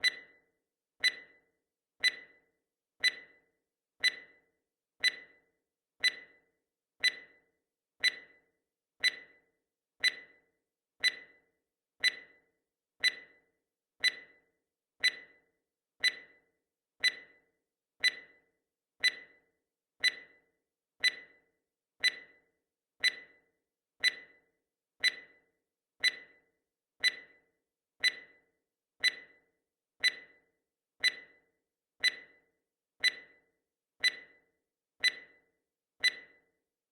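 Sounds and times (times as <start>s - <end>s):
clock-like timer ticks: 0.0s - 36.6s.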